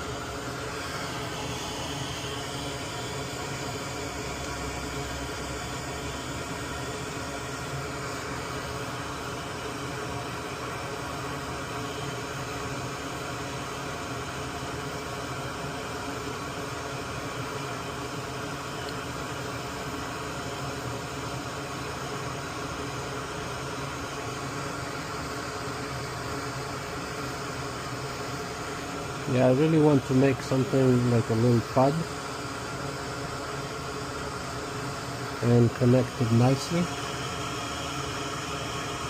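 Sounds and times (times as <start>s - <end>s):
small fan whirring: 0.0s - 39.0s.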